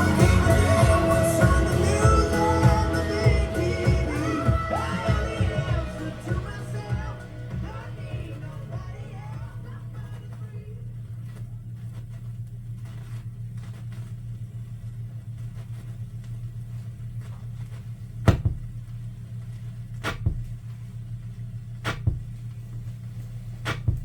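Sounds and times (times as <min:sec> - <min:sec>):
steady low hum: 0:00.0 - 0:24.0
record stylus pops: 0:21.8 - 0:22.3, 0:23.6 - 0:24.0.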